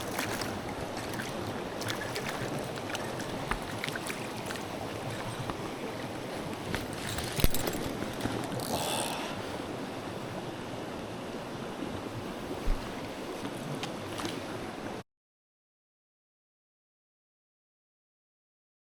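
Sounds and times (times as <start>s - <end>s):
stream water rushing: 0.0s - 15.0s.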